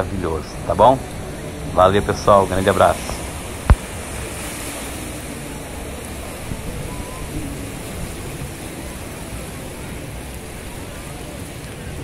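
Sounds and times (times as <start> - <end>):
sea waves breaking on beach: 0.0 - 12.0.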